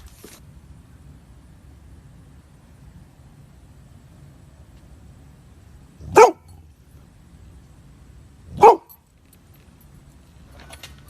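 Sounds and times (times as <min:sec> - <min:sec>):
dog barking: 0:06.0 - 0:06.6, 0:08.5 - 0:09.0.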